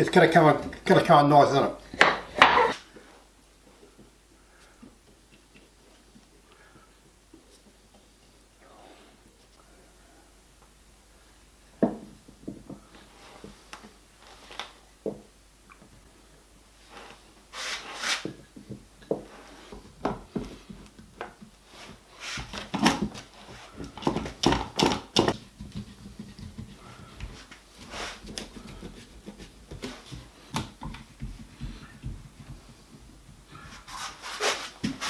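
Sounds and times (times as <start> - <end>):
wooden boards knocking and clattering: 1.9 - 2.7, 22.4 - 27.7.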